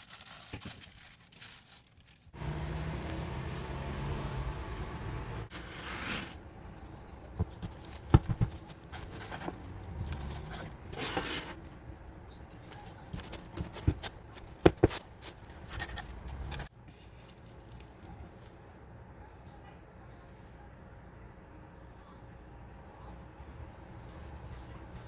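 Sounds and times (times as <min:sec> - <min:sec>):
scraping: 0:04.1 - 0:16.7.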